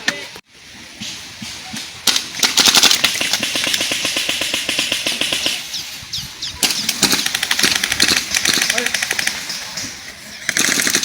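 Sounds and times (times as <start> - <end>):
airsoft gun firing full auto: 2.1 - 5.6, 6.6 - 9.4, 10.5 - 11.0.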